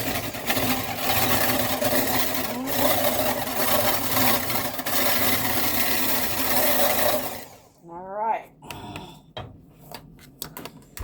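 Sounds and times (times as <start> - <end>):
kitchen mixer motor running: 0.0 - 7.8.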